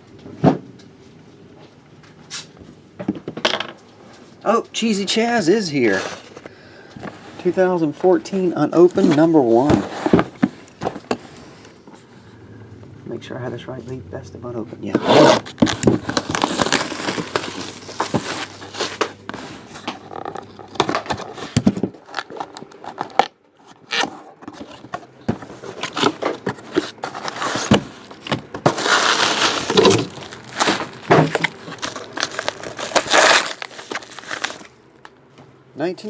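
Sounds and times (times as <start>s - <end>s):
packaging crinkling and tearing: 15.1s - 19.2s, 19.8s - 24.8s, 25.4s - 34.7s.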